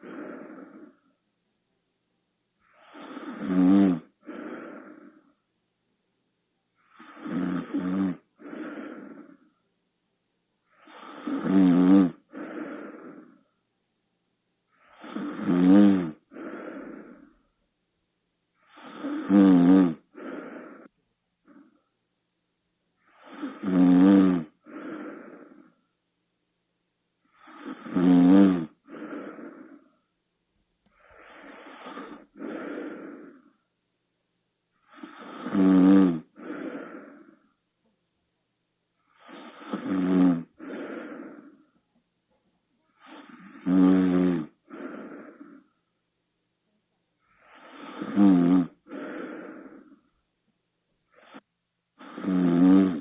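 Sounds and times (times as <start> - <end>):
person snoring: 0.0 - 1.1, 2.6 - 5.3, 6.8 - 9.5, 10.7 - 13.4, 14.7 - 17.3, 18.6 - 21.8, 23.0 - 25.8, 27.3 - 29.9, 31.0 - 33.6, 34.8 - 37.5, 39.1 - 41.6, 42.9 - 45.7, 47.2 - 50.1, 52.0 - 53.0.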